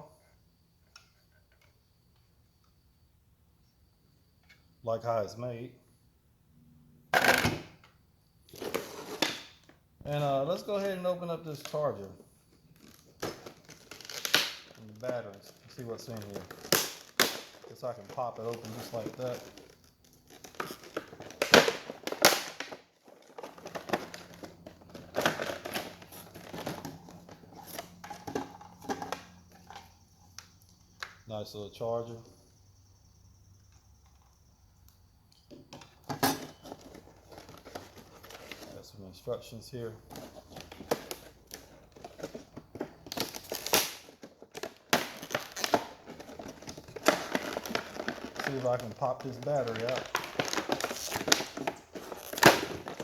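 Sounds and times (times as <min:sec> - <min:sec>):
cardboard ripping: 0:12.8 - 0:15.0, 0:16.1 - 0:27.0, 0:43.1 - 0:53.0
cardboard packaging crinkling: 0:12.8 - 0:29.2, 0:36.6 - 0:38.8, 0:40.0 - 0:53.0.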